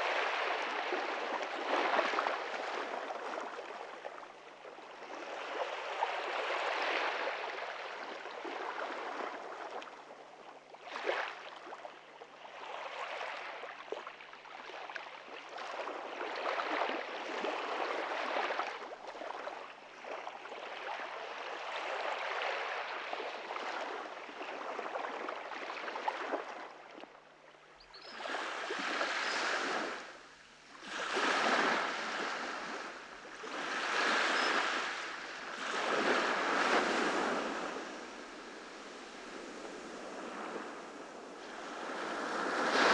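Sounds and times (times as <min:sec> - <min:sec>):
ocean waves washing onto beach: 0:00.0 - 0:10.0, 0:28.2 - 0:42.9.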